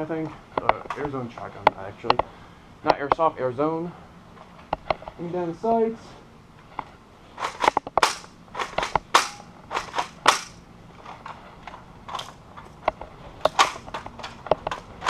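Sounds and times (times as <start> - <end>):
plastic toy gun clicks and knocks: 7.4 - 10.6, 12.1 - 15.0.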